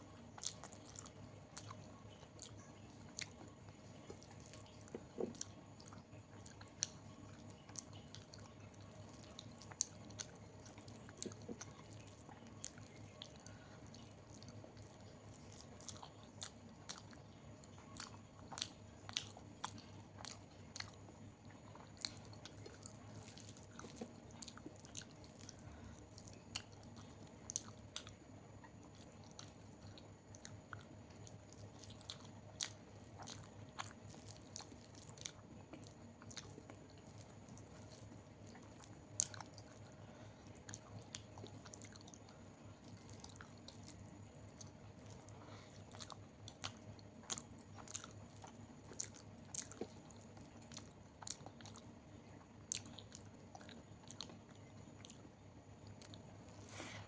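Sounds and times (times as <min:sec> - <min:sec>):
person chewing food: 0:00.1 - 0:57.0.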